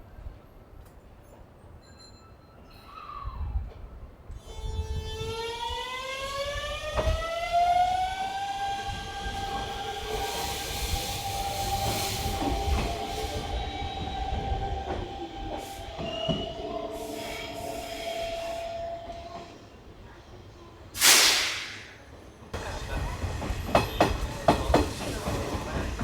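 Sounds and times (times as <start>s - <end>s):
low rail rumble: 3.6s - 26.0s
train traction motor whine: 4.4s - 19.7s.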